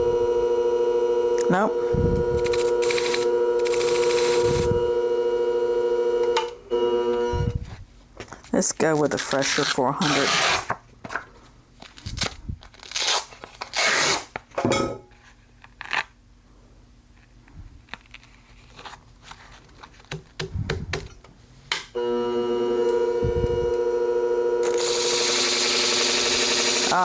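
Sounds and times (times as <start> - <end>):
machine motor humming: 0.0 - 7.6, 22.0 - 27.0
abrasive disc ripping off: 2.4 - 4.7.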